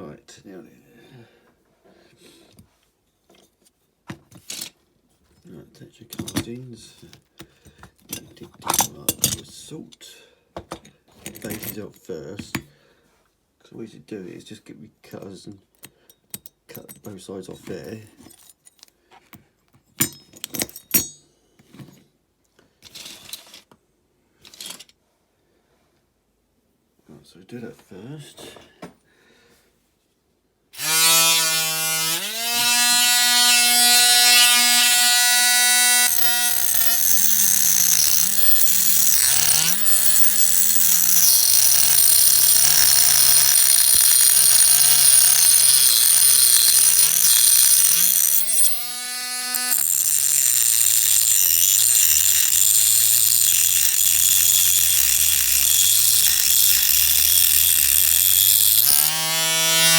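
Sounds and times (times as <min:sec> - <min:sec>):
power tool cutting metal: 0:30.8 - 0:59.9.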